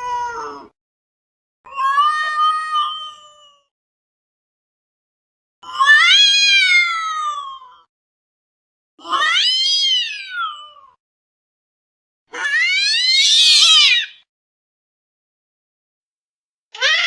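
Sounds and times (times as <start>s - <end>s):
cat meowing: 5.6s - 7.8s, 9.0s - 11.0s, 12.3s - 14.2s, 16.8s - 17.0s.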